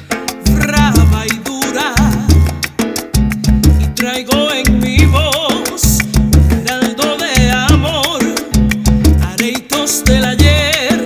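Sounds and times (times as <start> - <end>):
salsa music: 0.0 - 11.0.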